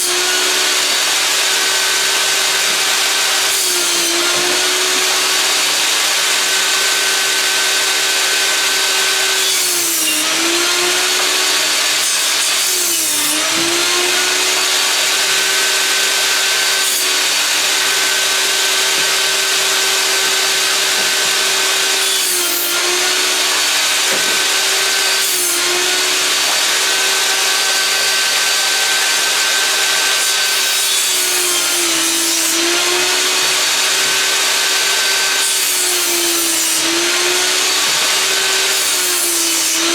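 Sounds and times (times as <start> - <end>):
table saw cutting boards: 0.0 - 39.9.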